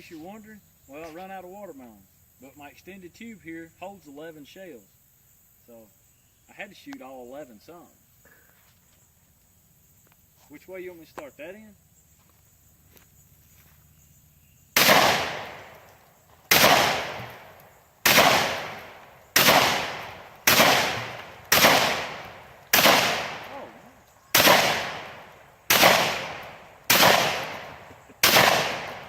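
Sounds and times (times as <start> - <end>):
shotgun blasts with echo: 14.8 - 15.9, 16.5 - 23.7, 24.3 - 29.0.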